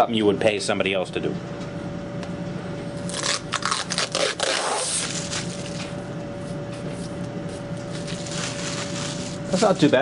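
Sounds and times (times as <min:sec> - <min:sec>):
plastic film peeling rustle: 0:03.1 - 0:06.0, 0:07.8 - 0:09.9.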